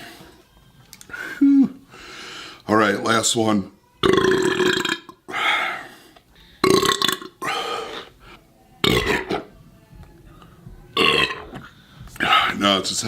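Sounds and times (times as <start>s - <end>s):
man belching: 4.0s - 5.2s, 6.6s - 7.7s, 8.8s - 9.5s, 11.0s - 11.5s.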